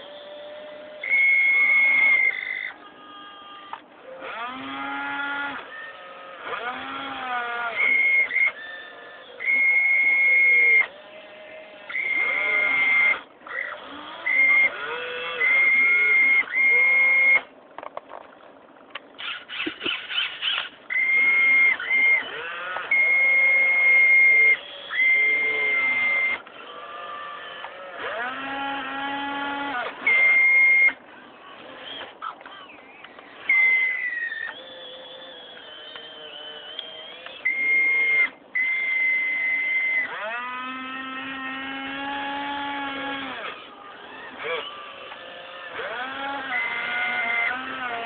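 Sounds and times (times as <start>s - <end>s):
electric motors whining: 0.0s - 48.0s.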